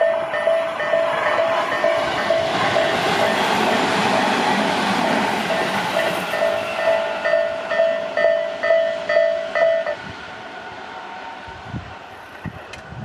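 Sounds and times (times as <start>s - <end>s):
railroad crossing bell ringing: 0.0s - 10.0s
passing train rushing: 0.0s - 13.0s.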